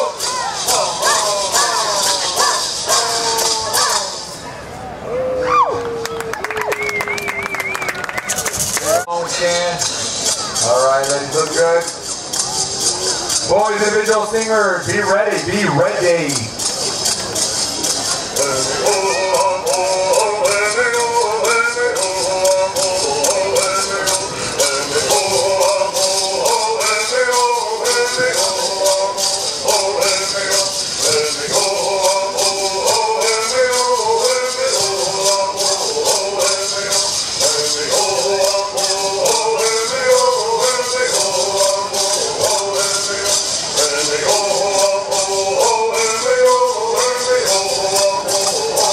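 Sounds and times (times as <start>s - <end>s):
group singing in unison: 0.0s - 4.4s, 18.4s - 48.9s.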